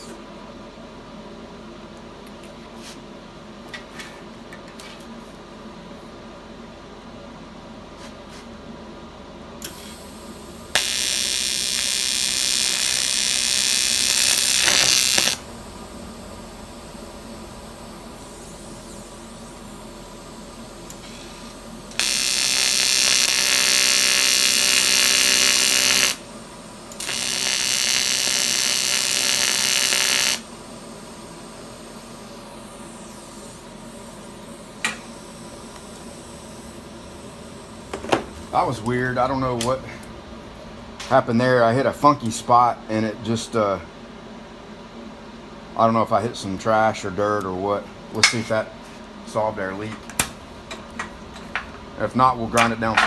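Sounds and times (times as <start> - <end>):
steady machine hum: 0.0 - 53.0
welding arc buzzing: 9.6 - 43.5.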